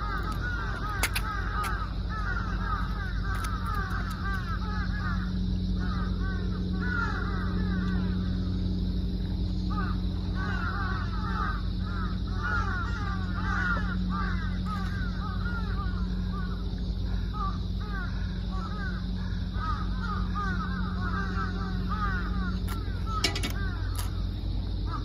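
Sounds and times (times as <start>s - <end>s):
flock of birds calling: 0.0s - 25.0s
steady low hum: 0.0s - 25.0s.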